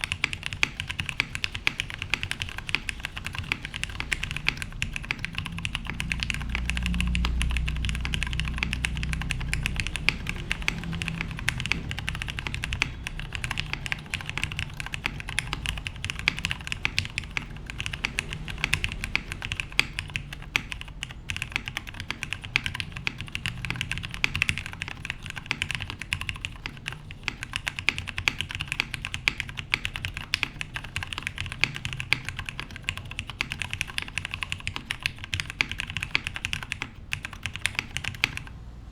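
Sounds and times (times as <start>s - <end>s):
mechanical keyboard typing: 0.0s - 38.6s.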